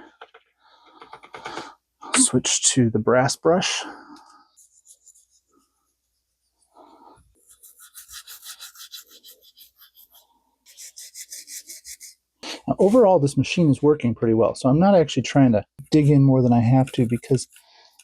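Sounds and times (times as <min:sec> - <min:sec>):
brush scrubbing metal: 0:07.4 - 0:12.1, 0:16.8 - 0:17.6.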